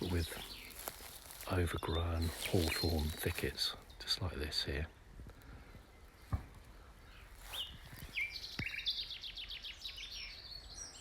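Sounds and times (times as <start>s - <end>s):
nightingale singing: 0.0s - 4.3s, 7.0s - 11.0s.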